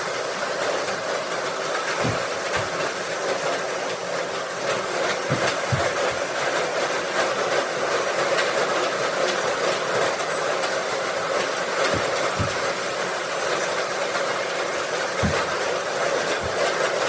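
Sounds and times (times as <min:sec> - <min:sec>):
bale elevator clattering: 0:00.9 - 0:07.1, 0:09.8 - 0:17.0
low thumps: 0:02.0 - 0:02.8, 0:05.2 - 0:06.3, 0:11.8 - 0:12.8.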